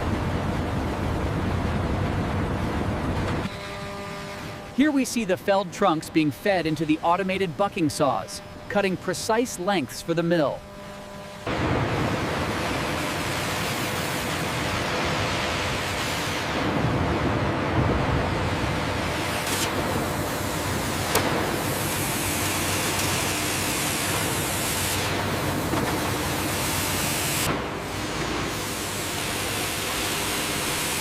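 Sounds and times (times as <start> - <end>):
faint steady hums: 0.0 - 31.0.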